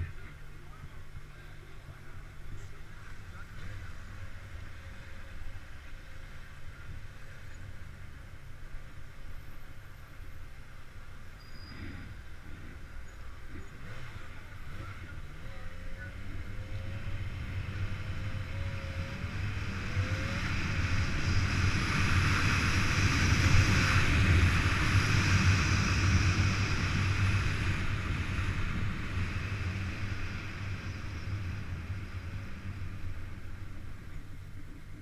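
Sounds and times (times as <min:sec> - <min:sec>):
wind rushing over microphone: 0:16.1 - 0:35.0.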